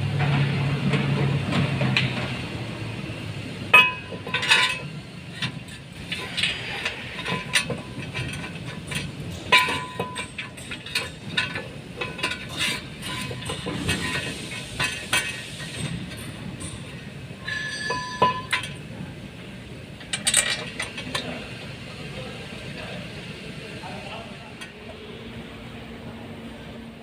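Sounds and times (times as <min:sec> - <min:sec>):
metal tools clinking: 0:17.4 - 0:18.8.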